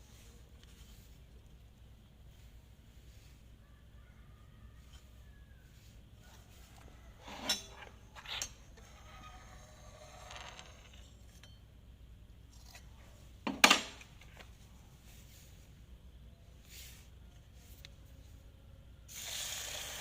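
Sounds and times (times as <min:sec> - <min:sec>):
soft scraping: 0:04.6 - 0:11.6.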